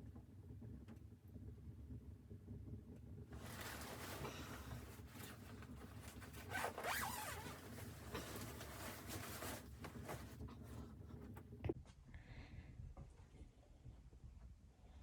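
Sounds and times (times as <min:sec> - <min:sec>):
zipper being pulled: 0:03.4 - 0:10.4.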